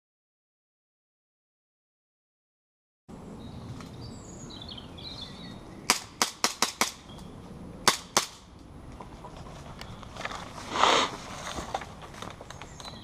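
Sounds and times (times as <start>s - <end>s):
airsoft gun shots: 5.9s - 7.0s, 7.8s - 8.4s
birds chirping faintly: 9.1s - 10.6s, 12.2s - 13.0s.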